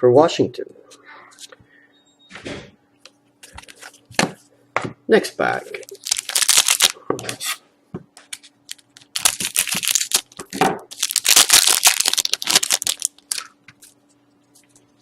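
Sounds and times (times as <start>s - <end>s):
foil wrapper tearing and crinkling: 5.8s - 7.0s, 8.7s - 14.0s.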